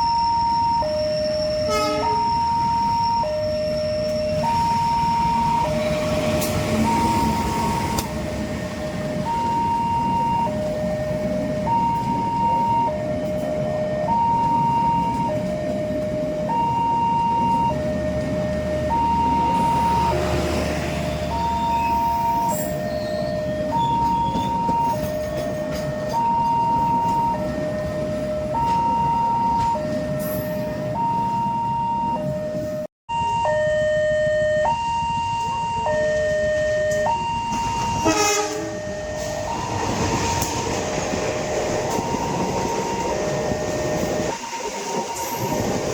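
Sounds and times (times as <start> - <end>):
level crossing alarm tones: 0.0 - 45.9
traffic noise: 0.0 - 45.9.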